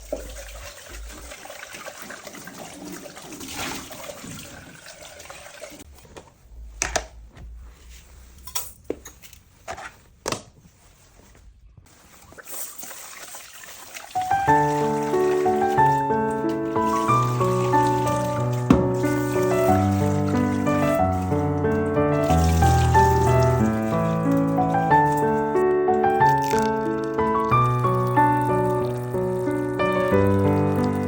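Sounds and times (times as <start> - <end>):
water running and splashing: 0.0 - 5.9, 11.9 - 31.0
music: 14.2 - 31.0
sharp knocks and clatters: 18.7 - 19.1.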